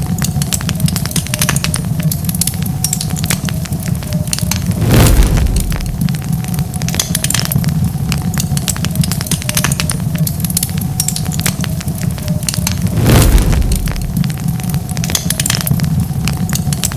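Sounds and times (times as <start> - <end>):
low rumble of flames: 0.0 - 16.9
wood fire crackling and popping: 0.0 - 16.9
rush of fire: 4.4 - 7.0, 12.6 - 15.6.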